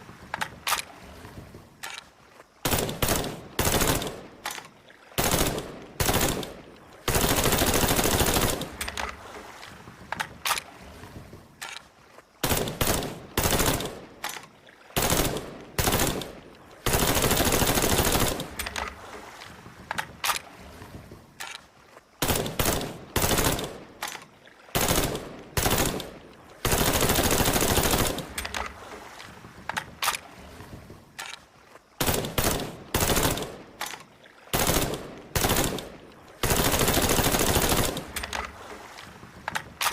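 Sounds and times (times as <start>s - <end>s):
rifle firing automatic bursts: 2.6s - 4.2s, 5.2s - 8.7s, 12.4s - 14.0s, 15.0s - 18.6s, 22.2s - 23.8s, 24.8s - 28.3s, 32.0s - 33.6s, 34.5s - 38.2s.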